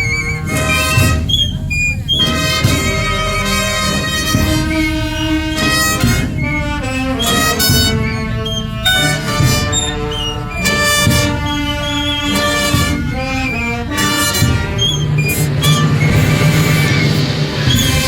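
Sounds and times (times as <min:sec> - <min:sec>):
wind band playing funeral march: 0:00.0 - 0:18.0.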